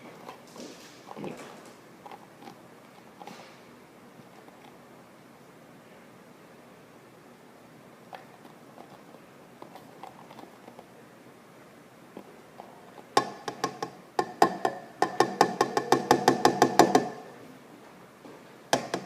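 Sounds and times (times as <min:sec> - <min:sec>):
plastic bottle tapping: 0:13.2 - 0:17.2.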